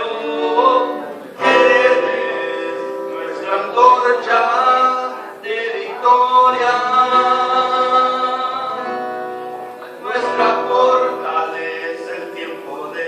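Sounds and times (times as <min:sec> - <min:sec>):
small choir singing: 0:00.0 - 0:09.0
acoustic guitar: 0:00.0 - 0:13.0.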